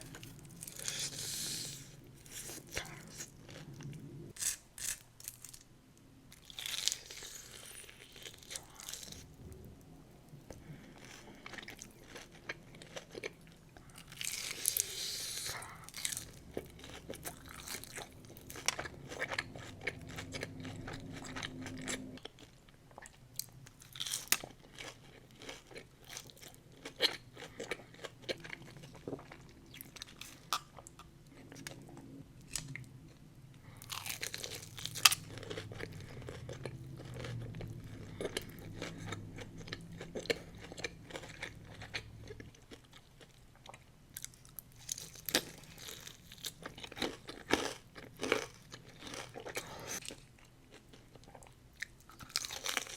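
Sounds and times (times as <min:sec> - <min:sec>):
person chewing crunchy food: 0:00.0 - 0:05.6, 0:06.3 - 0:09.6, 0:10.3 - 0:52.9
low hum: 0:15.7 - 0:22.3, 0:31.0 - 0:42.7.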